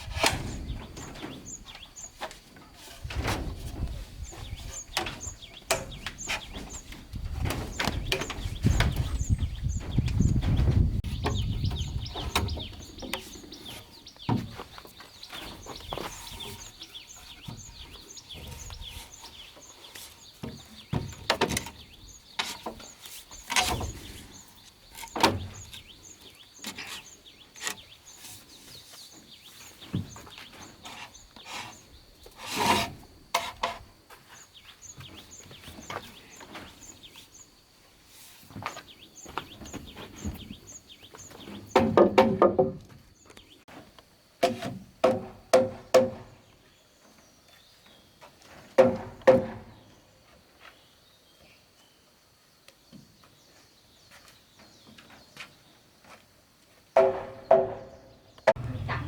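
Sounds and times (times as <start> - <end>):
wood knocking and scraping: 0.0 - 24.3, 41.4 - 43.5, 44.4 - 46.5, 48.8 - 49.8, 57.0 - 59.0.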